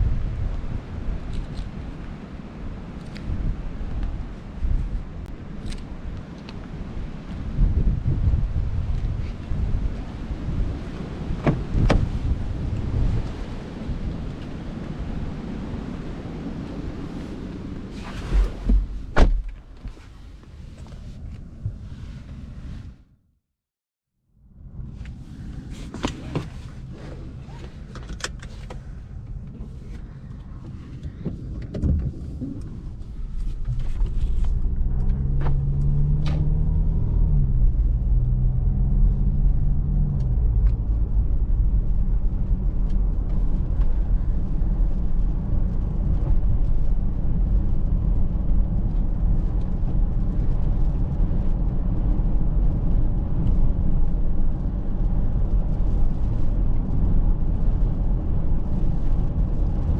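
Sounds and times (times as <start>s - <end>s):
road and drivetrain rumble: 0.0s - 23.2s, 24.4s - 59.9s
clicks and knocks in car cabin: 11.4s - 12.1s, 25.9s - 26.7s, 27.5s - 32.7s
thump: 18.3s - 19.6s.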